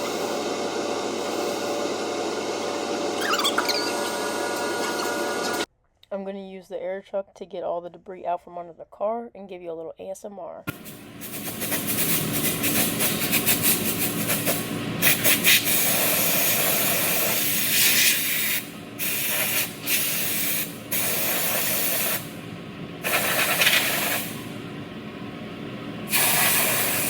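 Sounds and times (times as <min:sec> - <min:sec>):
compressed-air blow gun hissing: 0:10.7 - 0:22.4, 0:23.0 - 0:24.4, 0:26.1 - 0:27.0.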